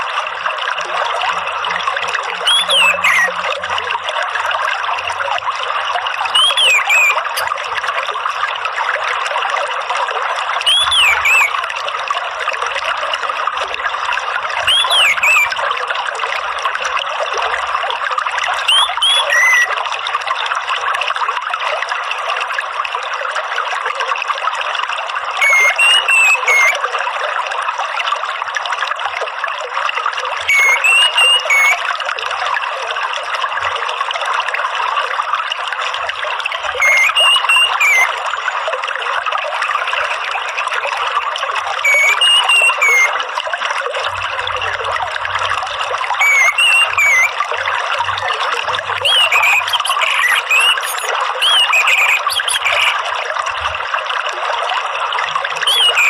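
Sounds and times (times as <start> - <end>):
trickling running water: 0.0 - 56.0
thrush whistling: 2.5 - 3.3, 6.4 - 7.5, 10.7 - 11.6, 14.7 - 15.6, 18.7 - 19.7, 25.4 - 26.8, 30.5 - 31.8, 36.8 - 38.2, 41.8 - 43.2, 46.2 - 47.4, 49.0 - 53.0, 55.7 - 56.0.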